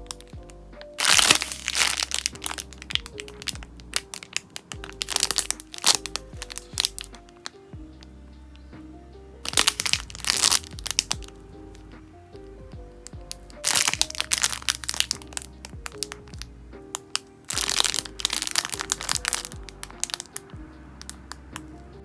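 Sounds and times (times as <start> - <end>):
background music with steady beat: 0.0 - 22.0
plastic packaging crinkling: 0.9 - 7.5, 9.5 - 11.3, 13.2 - 16.4, 17.0 - 21.4.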